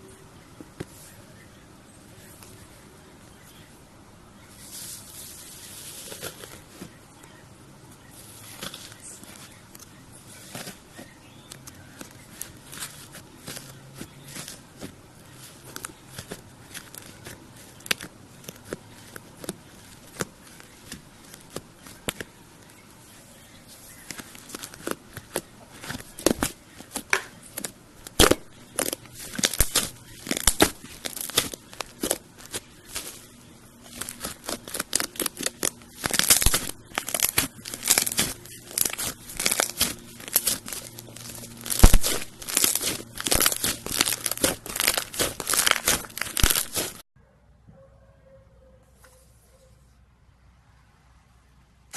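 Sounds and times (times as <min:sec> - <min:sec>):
slime crust crackling: 0:08.2 - 0:22.8, 0:23.4 - 0:47.0.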